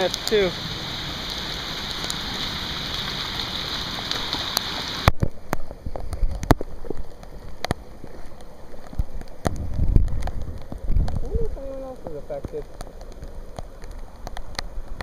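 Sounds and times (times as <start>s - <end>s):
heavy rain hissing: 0.0s - 5.1s.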